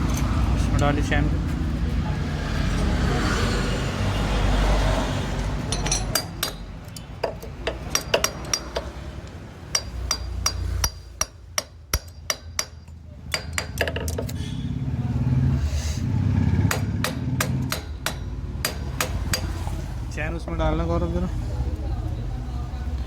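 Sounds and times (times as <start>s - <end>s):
metallic clinks and taps: 5.6s - 14.4s.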